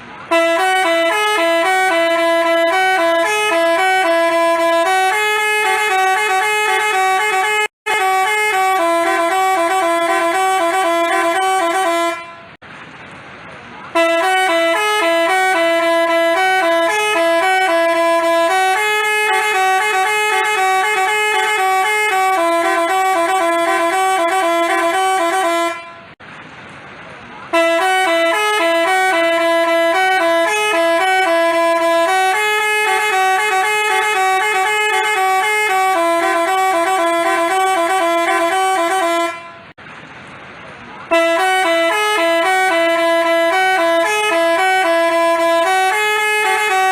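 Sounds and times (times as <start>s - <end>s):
bus horn playing a tune: 0.0s - 12.6s, 13.9s - 26.2s, 27.5s - 39.8s, 41.1s - 46.9s.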